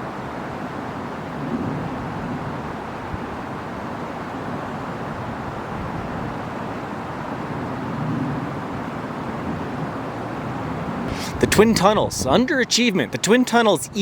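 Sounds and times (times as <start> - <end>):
highway traffic roar: 9.4 - 14.0.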